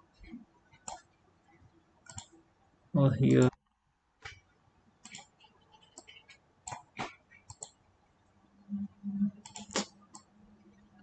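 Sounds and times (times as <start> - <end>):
faint low hum: 0.0 - 11.0
computer mouse clicks: 0.7 - 1.1, 2.0 - 2.4, 5.0 - 7.8, 9.4 - 10.3.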